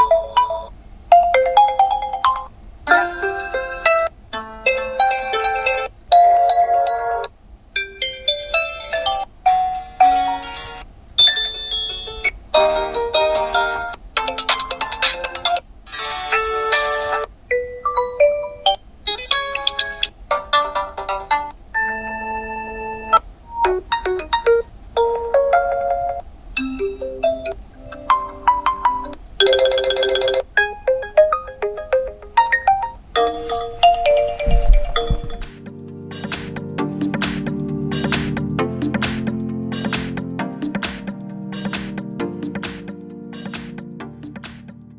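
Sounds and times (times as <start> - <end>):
phone alarm tones: 32.5 - 35.5.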